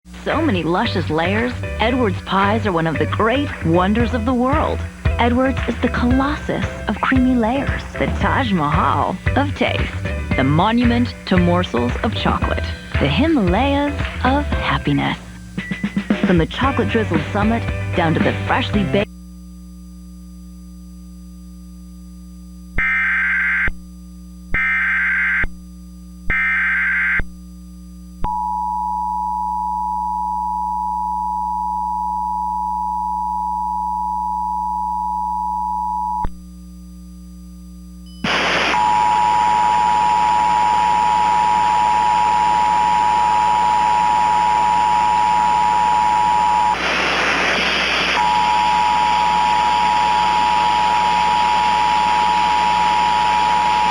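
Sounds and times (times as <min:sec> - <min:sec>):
static hiss: 0:00.1 - 0:19.1, 0:38.2 - 0:53.9
alert data bursts: 0:38.2 - 0:53.9.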